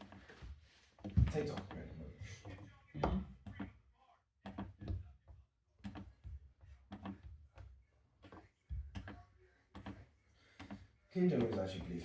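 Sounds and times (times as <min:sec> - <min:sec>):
soft knocks and thuds: 0:00.4 - 0:01.6.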